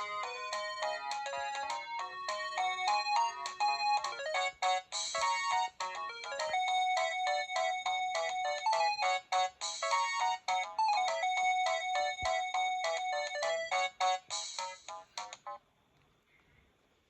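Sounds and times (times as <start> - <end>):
electronic phone ringtone melody: 0.0 - 14.8.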